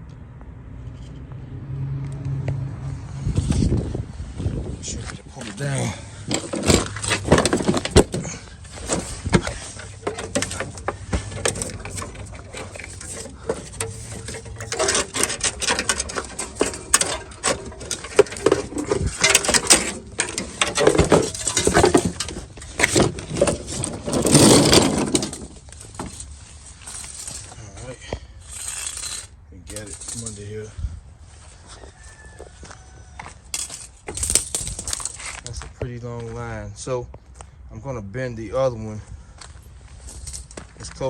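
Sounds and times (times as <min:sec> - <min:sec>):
metal tubing scraping and knocking: 0:04.8 - 0:30.8, 0:31.5 - 0:35.5.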